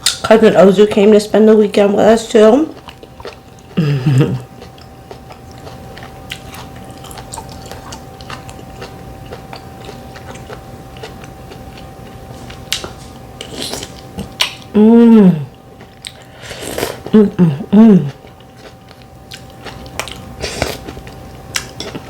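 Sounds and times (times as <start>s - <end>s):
person chewing: 2.7s - 14.7s, 15.4s - 22.0s.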